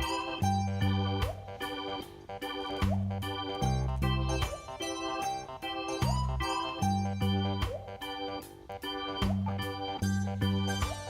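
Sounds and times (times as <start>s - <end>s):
electronic keyboard music: 0.0s - 11.0s.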